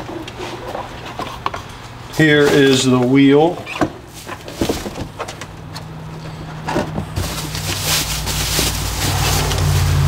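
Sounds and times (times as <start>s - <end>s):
low motor hum: 5.6s - 10.0s
rushing hiss with rustling: 7.3s - 10.0s.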